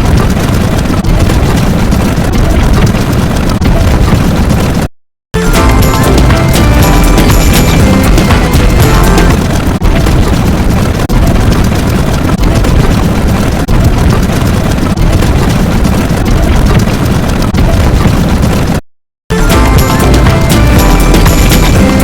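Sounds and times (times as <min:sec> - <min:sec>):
loud dense noise: 0:05.4 - 0:11.2, 0:19.3 - 0:22.0.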